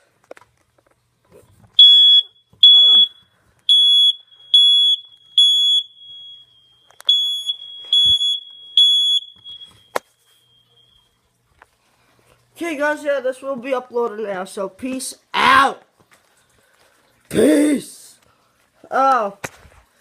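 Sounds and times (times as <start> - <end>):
smoke alarm beeping: 1.8 - 11.2.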